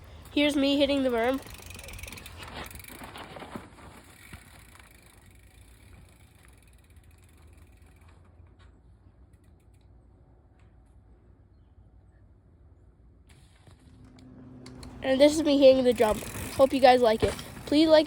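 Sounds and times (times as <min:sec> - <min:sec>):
bike tyres rolling: 0:00.0 - 0:11.3, 0:13.3 - 0:18.0
bike hub ratchet ticking: 0:00.1 - 0:03.0, 0:04.2 - 0:08.0, 0:14.7 - 0:17.1.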